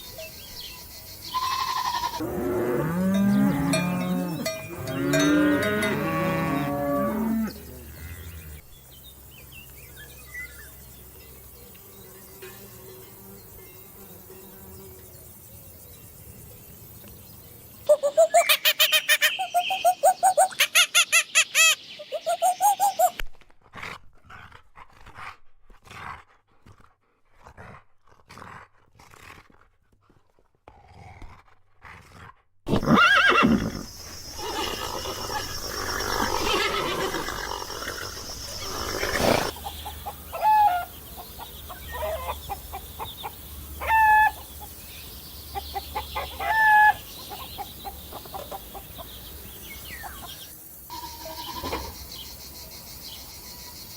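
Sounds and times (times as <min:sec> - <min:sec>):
loud harsh animal call: 0:01.3 - 0:02.3, 0:32.7 - 0:39.5, 0:50.9 - 0:52.0
farm animal calls: 0:01.3 - 0:08.6, 0:32.8 - 0:44.6, 0:45.6 - 0:49.1, 0:50.1 - 0:52.0.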